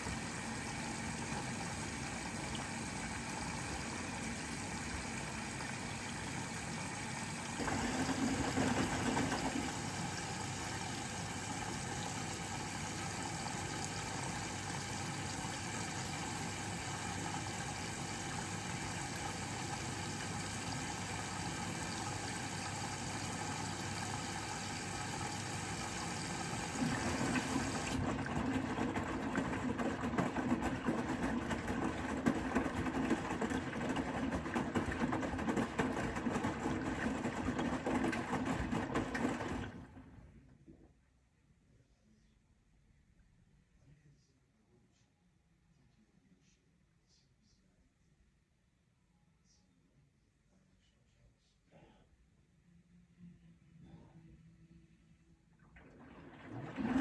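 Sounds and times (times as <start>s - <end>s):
washing machine humming: 0.0s - 40.7s, 55.6s - 57.0s.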